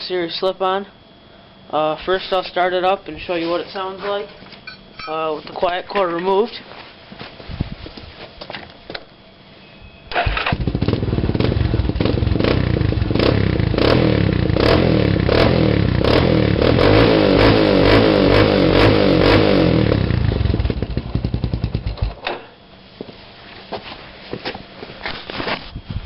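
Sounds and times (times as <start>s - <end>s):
atv engine starting and running: 10.1s - 22.4s.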